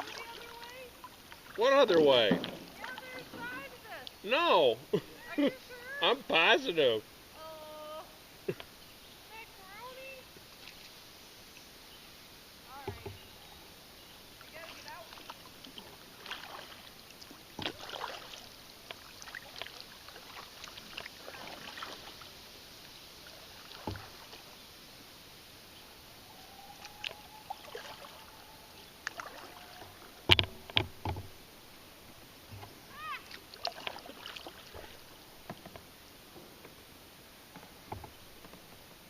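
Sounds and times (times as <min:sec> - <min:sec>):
paddle splashes: 0:00.0 - 0:07.6, 0:08.5 - 0:11.1, 0:12.6 - 0:39.0
knocks against kayak hull: 0:02.2 - 0:03.6, 0:12.8 - 0:13.2, 0:23.8 - 0:24.2, 0:30.3 - 0:31.3.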